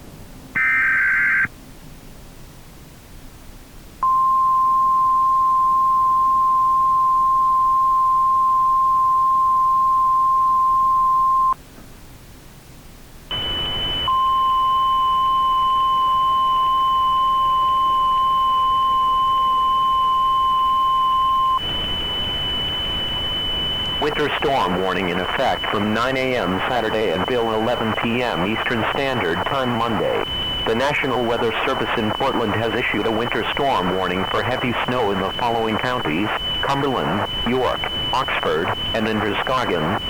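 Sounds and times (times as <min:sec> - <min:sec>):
higher steady tone: 0:13.3 - 0:40.0
burst of static: 0:21.6 - 0:40.0.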